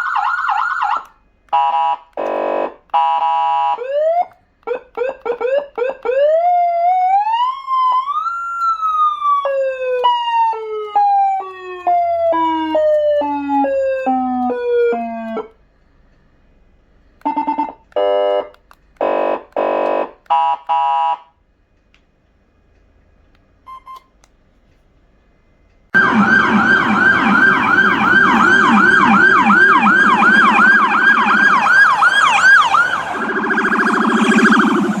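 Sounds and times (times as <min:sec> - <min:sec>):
electronic siren switching tones: 0:00.0 - 0:15.6, 0:17.2 - 0:21.1, 0:26.0 - 0:35.0
buzzy horn blasts: 0:01.6 - 0:03.7, 0:17.3 - 0:21.2
loud fast siren warble: 0:05.0 - 0:15.5, 0:26.0 - 0:35.0
short beep: 0:23.7 - 0:24.1.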